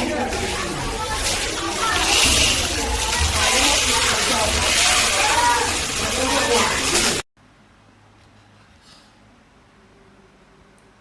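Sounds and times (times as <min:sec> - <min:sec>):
low electrical hum: 0:07.4 - 0:11.0.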